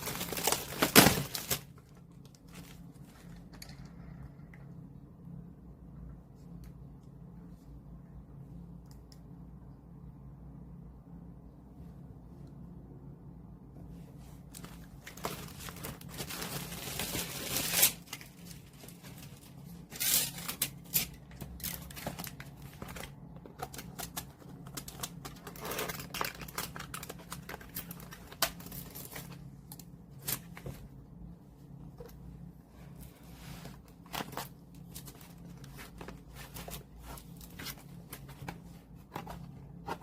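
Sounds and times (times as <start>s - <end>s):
plastic crinkling and tearing: 0.0s - 3.1s, 14.5s - 30.5s
packaging rustling: 0.0s - 3.3s, 14.5s - 29.5s.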